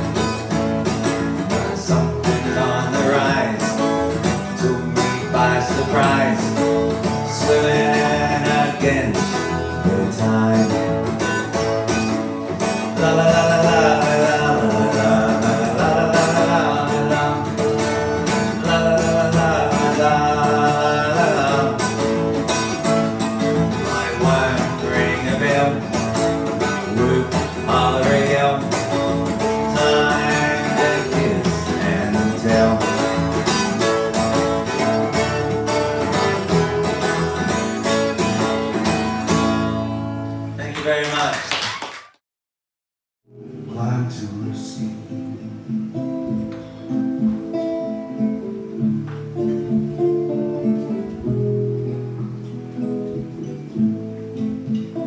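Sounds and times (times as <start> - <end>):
acoustic guitar: 0.0 - 42.1, 43.3 - 55.0
person singing wordless vocals: 1.5 - 11.1, 12.7 - 22.3, 23.4 - 33.4, 43.7 - 45.4.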